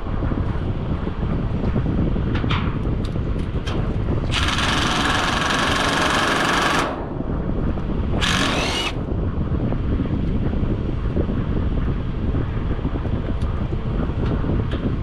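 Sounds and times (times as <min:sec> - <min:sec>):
wind on microphone: 0:00.0 - 0:15.0
impact driver hammering: 0:08.2 - 0:09.0.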